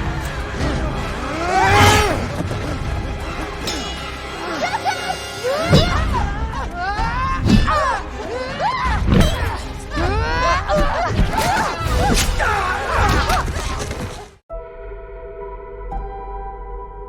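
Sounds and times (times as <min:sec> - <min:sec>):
people screaming and shouting: 0:00.0 - 0:14.4
film music: 0:00.0 - 0:17.0.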